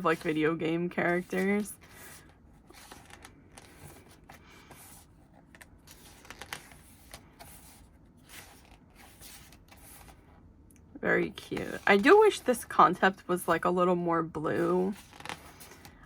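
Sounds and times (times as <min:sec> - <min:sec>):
photobook pages turning: 0:00.0 - 0:10.3, 0:14.6 - 0:16.0
soft paper clicks and rustles: 0:01.1 - 0:10.3, 0:14.8 - 0:16.0.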